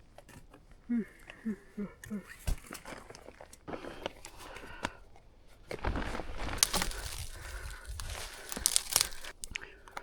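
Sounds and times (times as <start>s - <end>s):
fabric or plastic crinkling: 5.7s - 9.4s.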